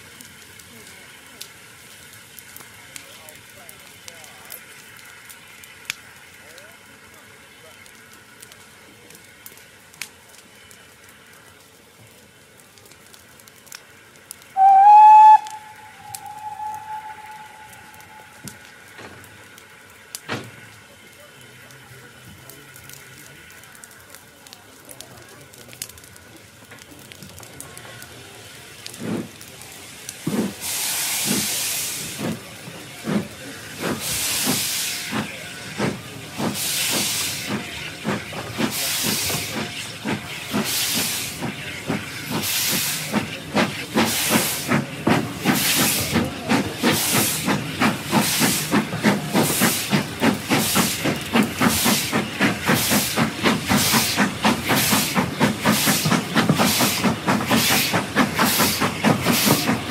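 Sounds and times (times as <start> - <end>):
hissing steam: 0.0 - 59.9
steam locomotive chuffing: 14.6 - 24.2, 26.7 - 59.9.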